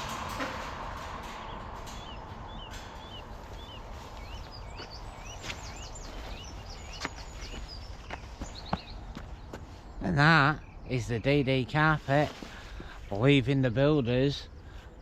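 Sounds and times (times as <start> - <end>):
low outdoor rumble: 0.0 - 15.0
bird chirping: 1.2 - 11.9.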